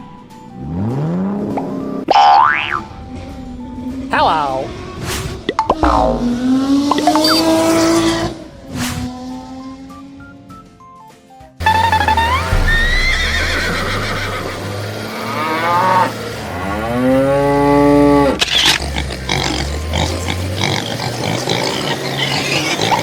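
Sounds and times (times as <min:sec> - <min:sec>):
background music: 0:00.0 - 0:18.4
farm animal calls: 0:18.4 - 0:23.0.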